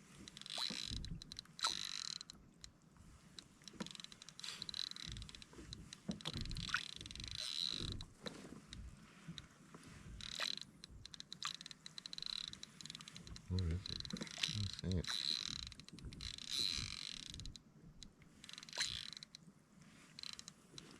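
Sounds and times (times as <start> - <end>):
reel and rod creaking: 0.0 - 20.9
fishing reel clicking: 0.3 - 2.4, 3.4 - 8.1, 10.2 - 17.6, 18.4 - 19.4, 20.2 - 20.9.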